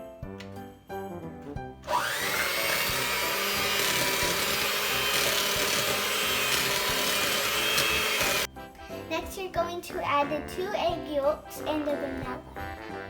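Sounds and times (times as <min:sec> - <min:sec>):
electric mixer motor whine: 0:01.8 - 0:08.5.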